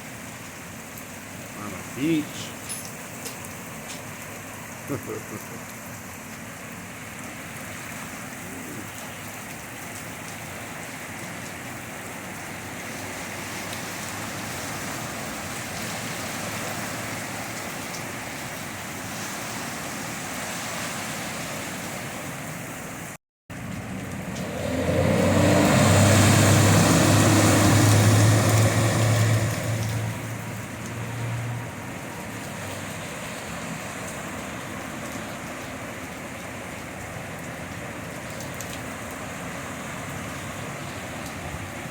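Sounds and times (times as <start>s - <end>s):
rushing floodwater: 0.0s - 41.9s
steady rain: 0.0s - 41.9s
tyres splashing water: 0.0s - 41.9s
car engine humming: 23.5s - 32.0s.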